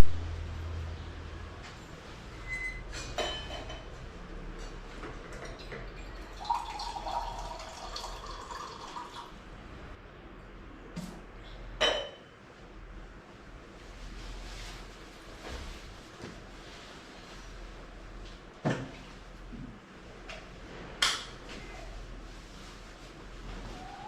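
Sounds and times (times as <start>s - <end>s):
water pouring: 5.4s - 9.4s.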